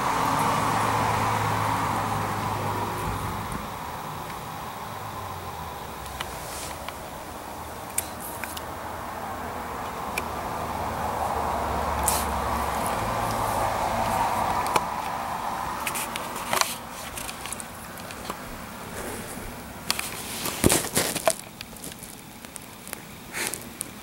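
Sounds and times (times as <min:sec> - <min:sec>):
dog rubbing and rustling on floor: 0:06.3 - 0:06.8, 0:18.8 - 0:21.3
scuffs and knocks: 0:18.4 - 0:22.2.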